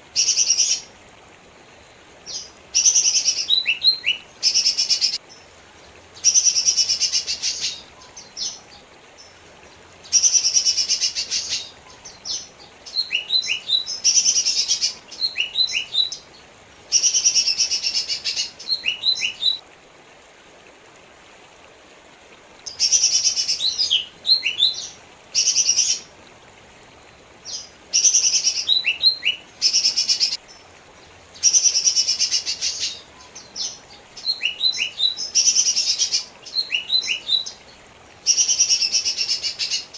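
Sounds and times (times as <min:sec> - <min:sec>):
bird singing trills and whistles: 0:31.4 - 0:37.5.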